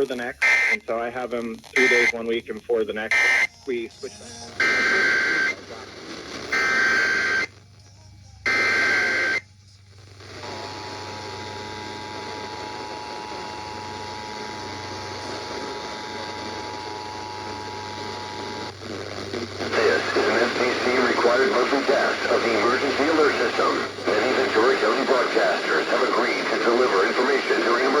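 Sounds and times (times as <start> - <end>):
digital data bursts: 0.4 - 0.8, 1.8 - 2.1, 3.1 - 3.5.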